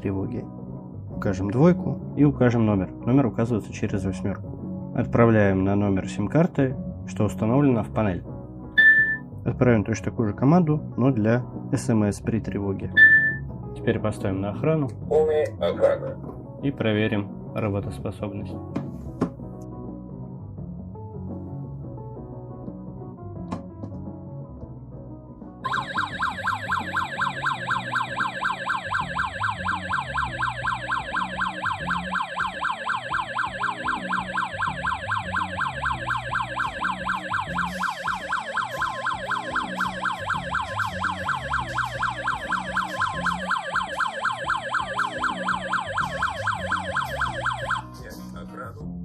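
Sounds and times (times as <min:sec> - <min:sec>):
electronic alarm siren wailing: 0:08.8 - 0:09.2, 0:25.6 - 0:47.9.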